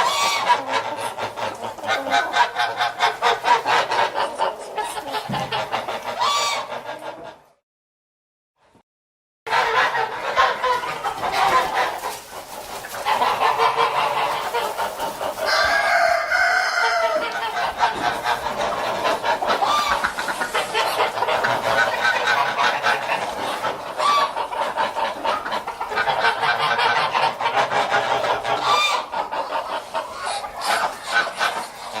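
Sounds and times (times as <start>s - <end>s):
short high poultry calls: 0.0s - 7.2s, 12.8s - 32.0s
poultry clucking: 0.0s - 7.6s, 9.5s - 32.0s
long drawn-out hen call: 6.2s - 6.8s, 15.5s - 23.0s.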